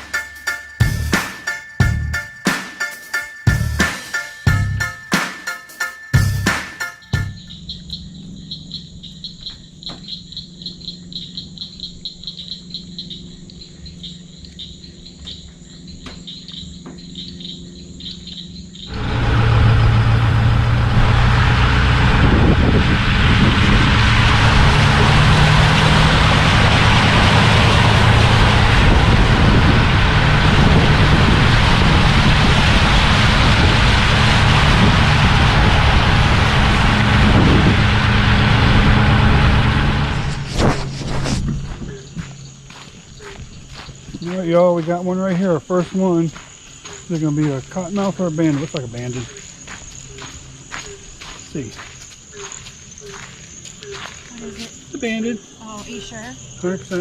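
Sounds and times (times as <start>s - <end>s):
night chorus of insects or frogs: 5.9s - 19.0s, 40.4s - 57.0s
low hum: 6.2s - 43.6s
car driving on dirt road: 6.2s - 57.0s.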